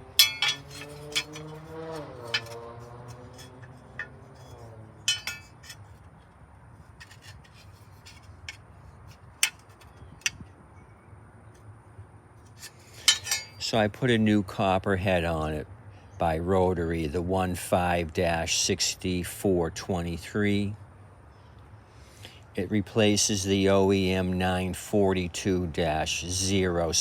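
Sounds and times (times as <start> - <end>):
metallic clicks and clinks: 0.0 - 4.5, 5.1 - 5.8, 13.0 - 13.6.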